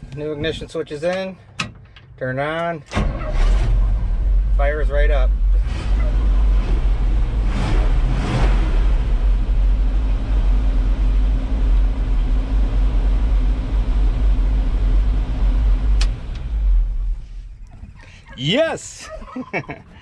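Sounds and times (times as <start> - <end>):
engine running steadily: 3.2 - 18.0.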